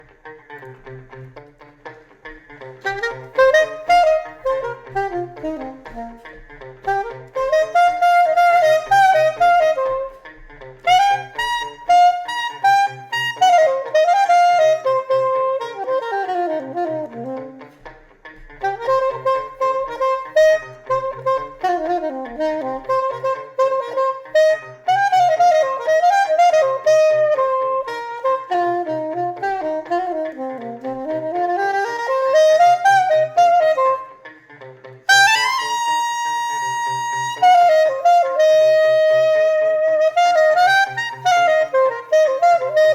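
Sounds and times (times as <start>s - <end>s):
funk backing groove: 0.0s - 34.2s
saxophone improvising: 0.0s - 42.9s.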